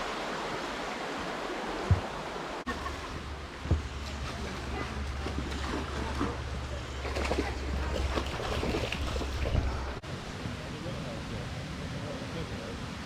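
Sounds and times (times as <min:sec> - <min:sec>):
river water rushing: 0:00.0 - 0:13.0
wind rumble on microphone: 0:03.1 - 0:13.0.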